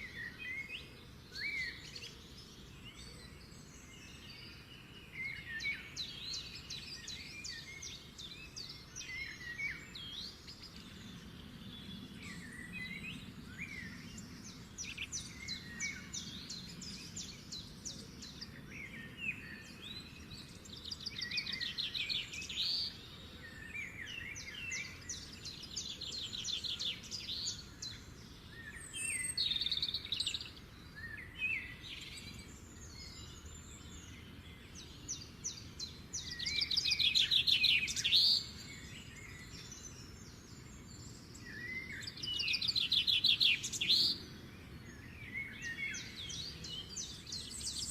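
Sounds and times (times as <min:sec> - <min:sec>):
birds chirping and singing: 0:00.0 - 0:47.9.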